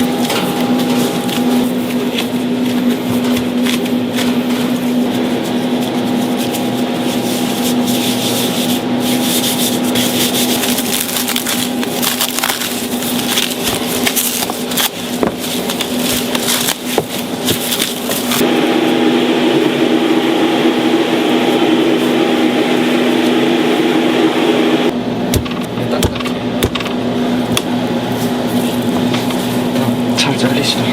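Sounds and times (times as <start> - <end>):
crackling handling noise: 0.0 - 18.4
steady mechanical hum: 0.0 - 30.9.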